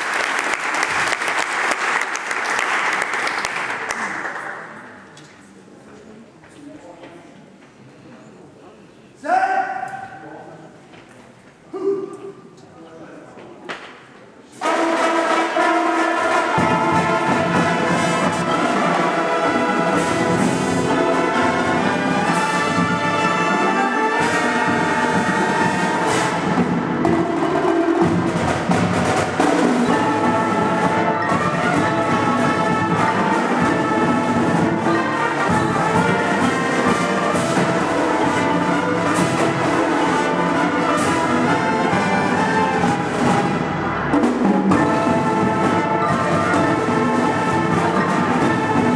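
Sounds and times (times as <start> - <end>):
marching band playing: 14.6 - 48.9.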